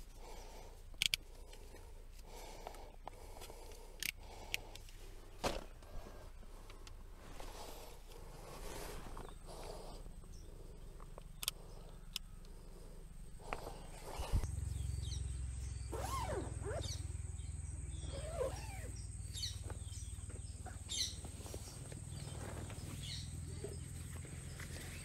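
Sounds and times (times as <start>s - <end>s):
steady low rumble: 0.0s - 15.9s
birds chirping and calling: 7.4s - 25.0s.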